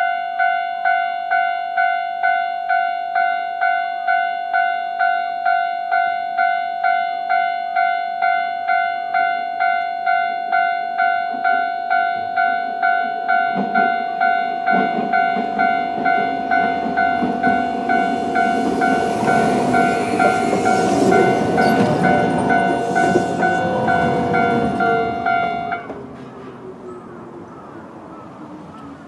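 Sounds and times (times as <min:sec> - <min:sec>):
level-crossing electronic bell: 0:00.0 - 0:25.9
approaching train rumble: 0:13.4 - 0:29.0.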